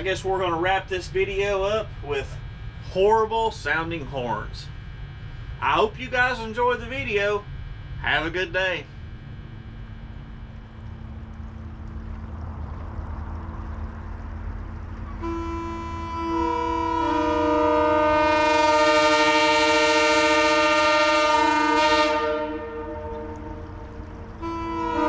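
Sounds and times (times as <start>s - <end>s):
low rumble: 0.0s - 17.6s, 22.4s - 25.0s
locomotive horn blast: 14.9s - 25.0s.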